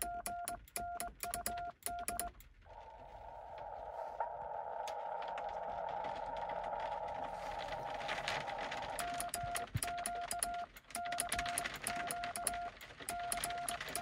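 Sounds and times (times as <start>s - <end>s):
morse code tone: 0.0s - 2.4s, 8.9s - 14.0s
morse key contacts clicking: 0.0s - 2.6s, 9.0s - 14.0s
crackles: 0.0s - 14.0s.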